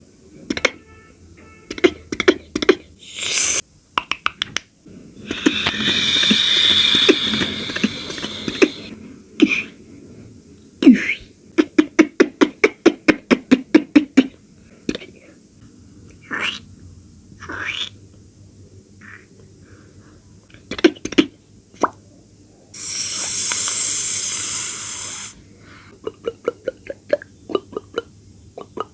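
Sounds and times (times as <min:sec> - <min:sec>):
mouth-made hiss: 0:03.0 - 0:03.7, 0:05.1 - 0:09.8, 0:22.7 - 0:26.0.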